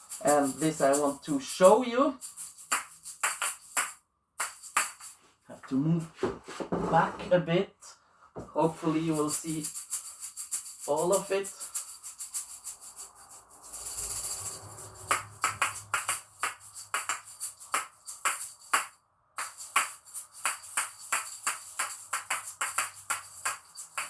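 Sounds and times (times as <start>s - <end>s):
shaker balls rattling: 0.0s - 5.3s, 8.8s - 24.0s
plastic balls clacking: 15.1s - 24.0s.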